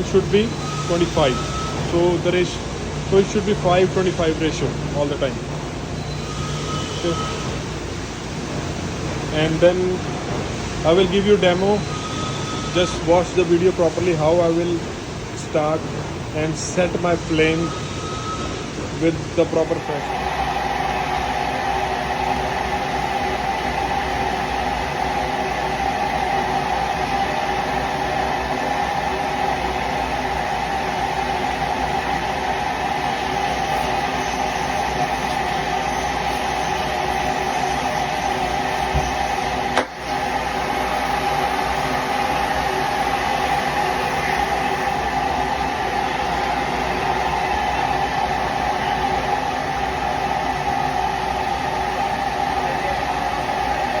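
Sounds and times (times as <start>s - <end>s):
cutting torch flame hissing: 19.8s - 47.7s.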